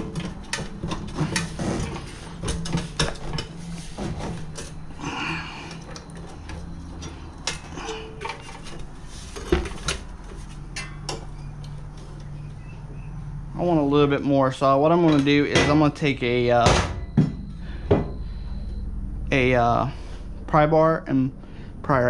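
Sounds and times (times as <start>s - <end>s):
steady low hum: 0.0s - 22.0s
metal tools clinking on metal: 4.4s - 8.9s, 10.6s - 12.4s.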